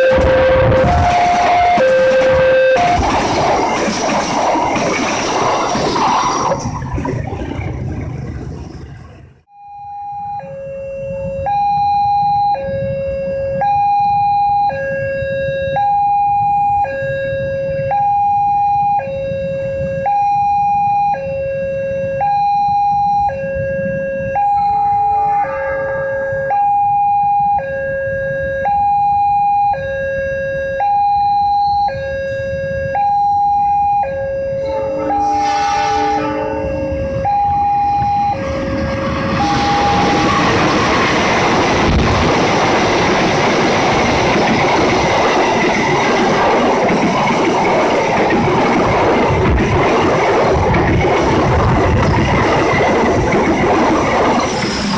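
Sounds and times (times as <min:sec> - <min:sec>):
train horn: 0:00.0 - 0:03.4, 0:23.3 - 0:28.6, 0:34.0 - 0:42.2
level-crossing two-tone alarm: 0:00.0 - 0:05.5, 0:09.5 - 0:49.1
train arriving: 0:00.0 - 0:08.4, 0:09.6 - 0:29.2, 0:30.2 - 0:54.9.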